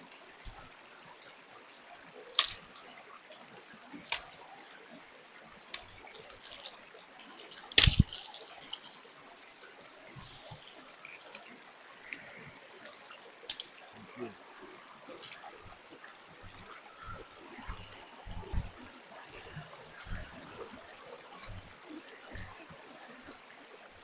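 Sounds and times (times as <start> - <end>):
stream water trickling: 0.0 - 24.0
sticks snapping: 0.4 - 0.6, 2.4 - 2.6, 4.1 - 4.4, 5.6 - 6.5, 7.7 - 8.2, 13.5 - 13.7, 17.0 - 18.8.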